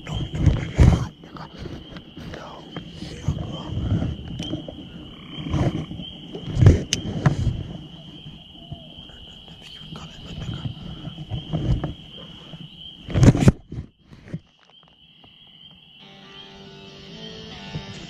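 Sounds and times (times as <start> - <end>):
insect trilling: 0.0 - 18.0
rustling and thumps: 0.1 - 2.4, 5.4 - 7.8, 10.5 - 12.1, 13.0 - 15.0.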